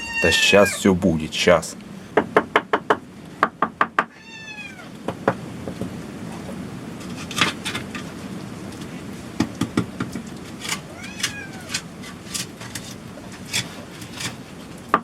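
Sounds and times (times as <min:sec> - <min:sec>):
cat meowing: 0:00.0 - 0:00.9, 0:04.1 - 0:05.0, 0:10.9 - 0:11.8
sharp knocks and taps: 0:02.2 - 0:04.1, 0:05.1 - 0:06.6, 0:09.4 - 0:10.4.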